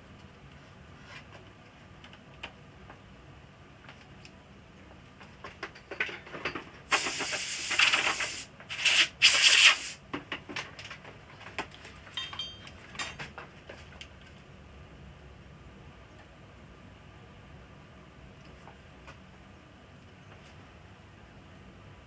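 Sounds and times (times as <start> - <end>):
small clicks and taps: 1.2 - 3.0
hissing rubbing noise: 6.9 - 10.0.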